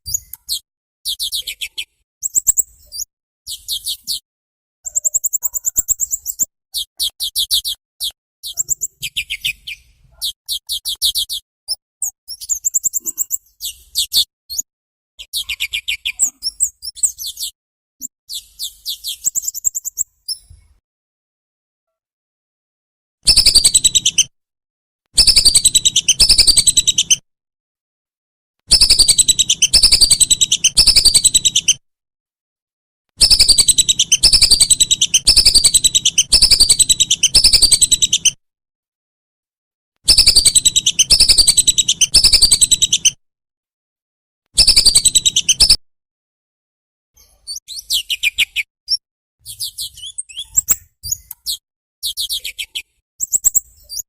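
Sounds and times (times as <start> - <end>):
bird chirps: 0.0 - 4.2, 4.8 - 20.7, 23.3 - 24.3, 25.2 - 27.2, 28.7 - 31.8, 33.2 - 38.4, 40.1 - 43.2, 44.6 - 45.8, 47.2 - 54.0
songbird song: 25.2 - 27.2, 28.7 - 31.7, 33.2 - 38.4.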